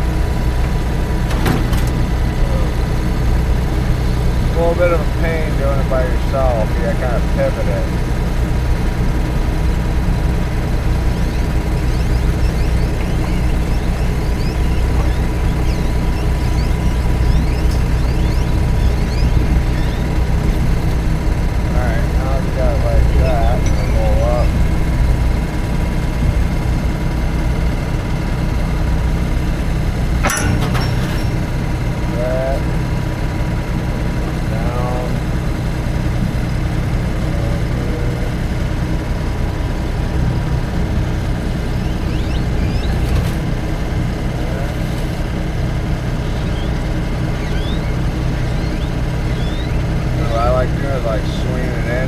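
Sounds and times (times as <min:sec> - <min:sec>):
diesel engine humming: 0:00.0 - 0:52.0
metallic clank of plow blade: 0:30.2 - 0:31.5.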